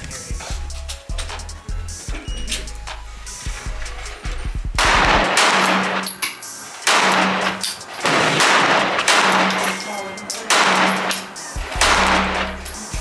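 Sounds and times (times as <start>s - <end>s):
gunshots with ringing tail: 4.8s - 13.0s.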